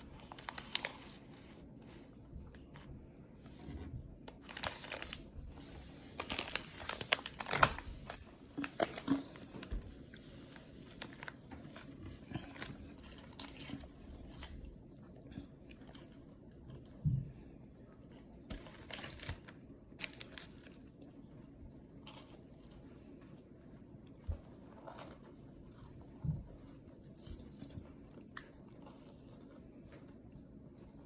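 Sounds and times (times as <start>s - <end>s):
snack packaging crinkling: 0.0s - 1.4s, 4.3s - 14.8s, 18.4s - 21.2s.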